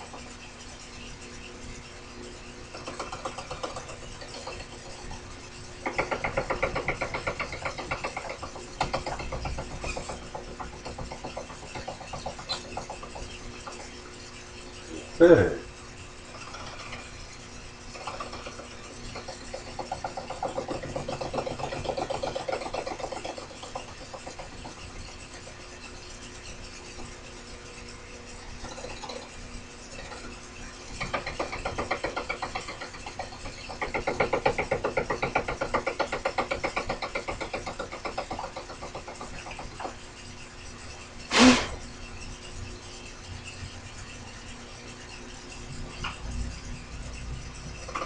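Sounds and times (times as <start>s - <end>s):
cutter chattering: 14.9s - 15.7s.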